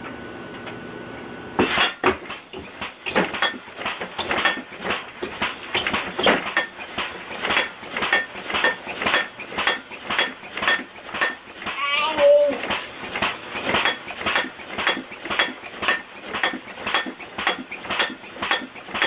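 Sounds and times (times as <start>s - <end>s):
bed shaking and banging: 1.6s - 11.6s.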